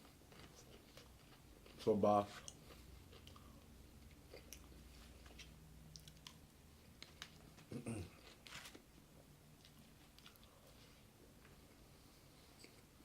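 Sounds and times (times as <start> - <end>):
person chewing with mouth clicks: 0.3 - 6.4.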